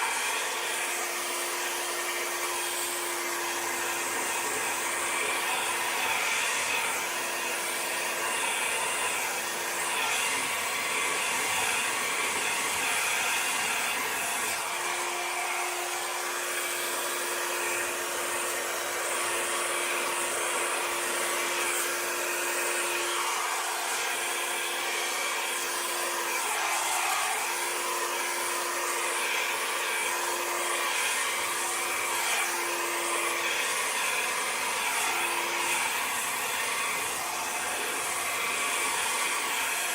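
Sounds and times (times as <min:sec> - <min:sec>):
hair dryer blowing: 0:00.0 - 0:39.9.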